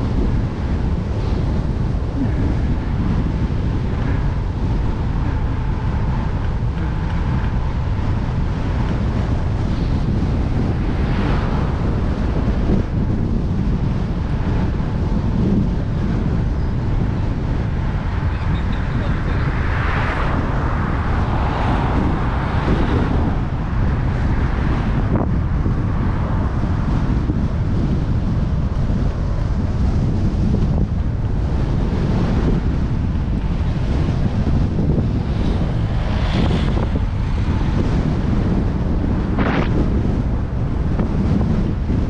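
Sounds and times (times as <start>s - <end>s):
wind buffeting microphone: 0.0s - 42.0s.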